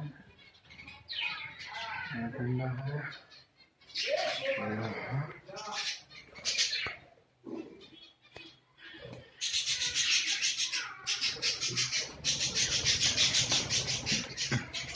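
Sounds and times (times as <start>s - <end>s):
fast rhythmic rasping scratch: 11.5s - 14.9s.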